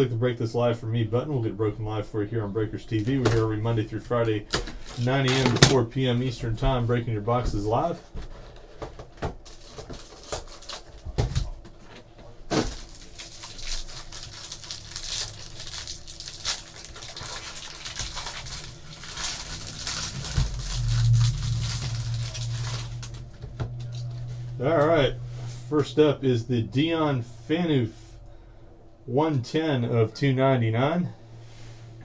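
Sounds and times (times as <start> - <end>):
low steady hum: 0.0 - 32.0
wrapping crinkling and tearing: 9.4 - 11.5, 12.5 - 24.4.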